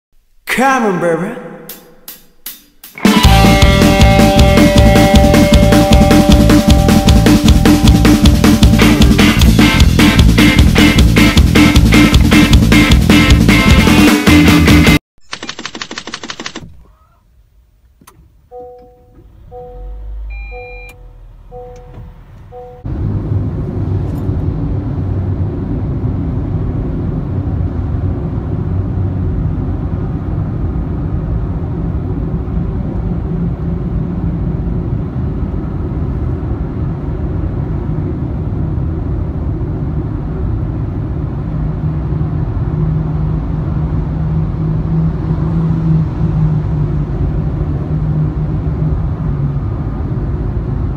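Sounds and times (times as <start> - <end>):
car road and engine noise: 3.0 - 13.6, 16.6 - 50.9
two-tone electronic chime: 18.5 - 22.9.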